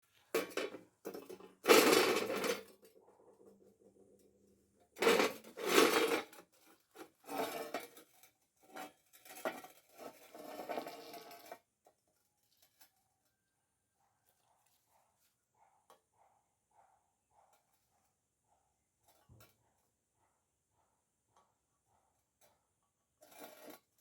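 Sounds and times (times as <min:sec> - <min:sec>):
steel clattering and scraping: 0:05.0 - 0:12.8, 0:23.2 - 0:24.0.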